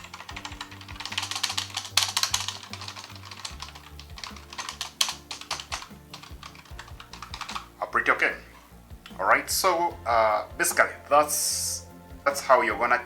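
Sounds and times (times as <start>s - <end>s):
keyboard keys clicking: 0.0s - 7.8s.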